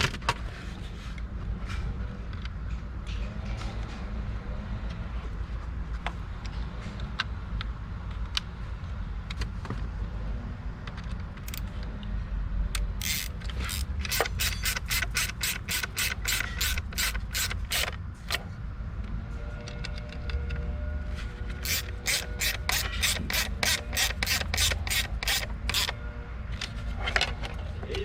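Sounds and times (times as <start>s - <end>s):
socket ratchet clicking: 11.0s - 11.7s, 12.7s - 18.4s, 21.6s - 26.0s.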